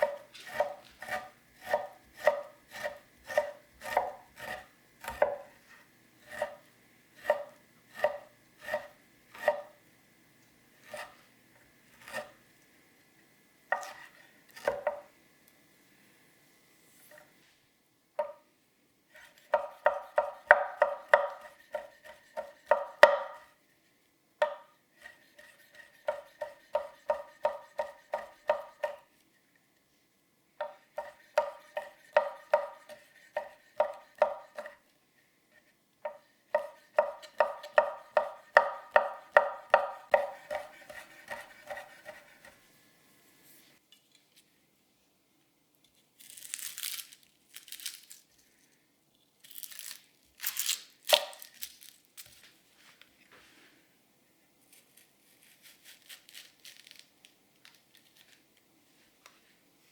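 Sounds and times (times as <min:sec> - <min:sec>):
knife chopping on cutting board: 0:00.0 - 0:06.6, 0:07.2 - 0:09.8, 0:13.7 - 0:15.1, 0:19.2 - 0:23.5, 0:24.4 - 0:29.1, 0:30.6 - 0:34.8, 0:36.0 - 0:42.6.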